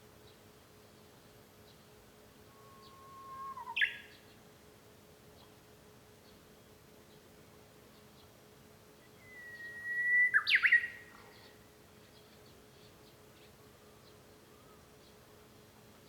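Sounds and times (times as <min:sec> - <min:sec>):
bird singing whistled song: 0:02.6 - 0:04.2, 0:09.0 - 0:11.5.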